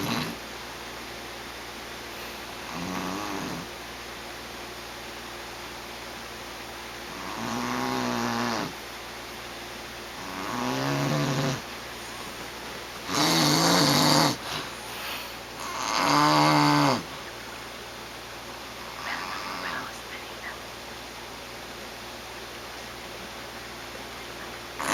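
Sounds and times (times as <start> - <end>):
snoring: 0.0 - 0.4, 2.6 - 3.7, 7.1 - 8.8, 10.2 - 11.6, 13.1 - 17.1, 19.0 - 19.9.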